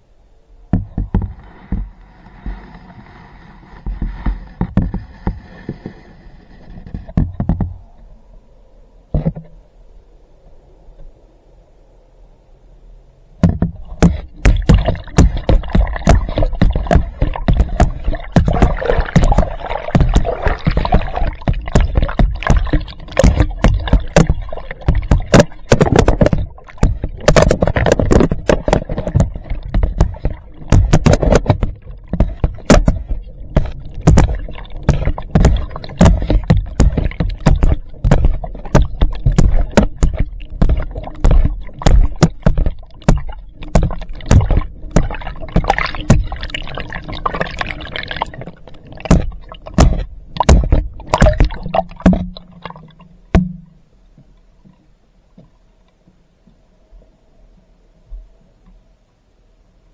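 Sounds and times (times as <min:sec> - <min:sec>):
water splashing and sloshing: 0:00.0 - 0:11.2, 0:13.3 - 0:58.9
sharp knocks and splats: 0:13.4 - 0:53.8.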